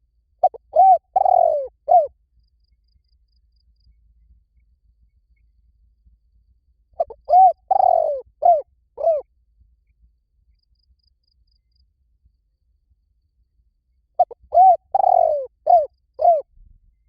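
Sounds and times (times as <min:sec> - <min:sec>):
dove cooing: 0:00.4 - 0:02.1, 0:07.0 - 0:09.3, 0:14.2 - 0:16.5.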